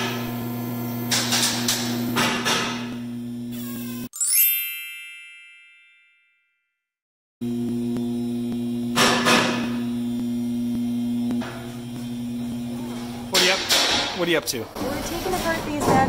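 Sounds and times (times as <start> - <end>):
electrical mains hum: 0.0 - 4.1, 7.4 - 16.0
bright ringing note: 4.2 - 6.5.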